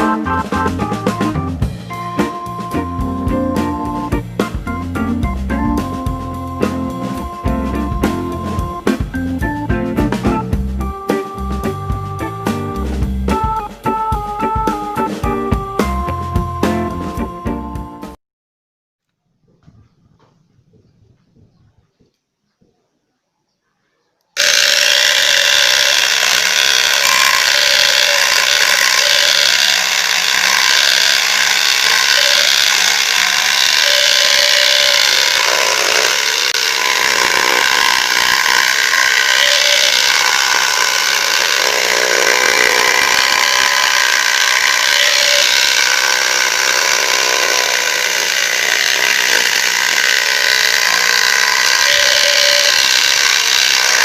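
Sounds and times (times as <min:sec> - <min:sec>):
power saw cutting wood: 0:00.0 - 0:17.0, 0:24.4 - 0:54.0.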